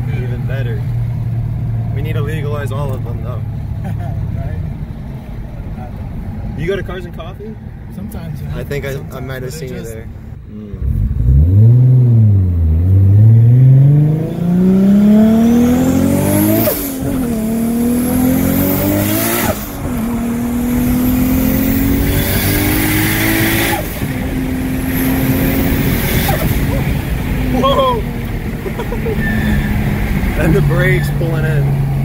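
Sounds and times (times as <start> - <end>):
car engine accelerating: 0.0 - 32.0
turbo whistle: 29.2 - 29.8.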